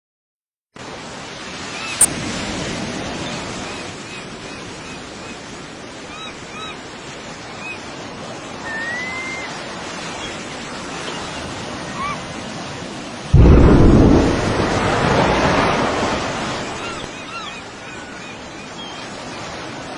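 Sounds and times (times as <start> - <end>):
sea waves: 0.8 - 19.9
loud low rush: 13.4 - 17.1
wind on microphone: 13.4 - 17.2.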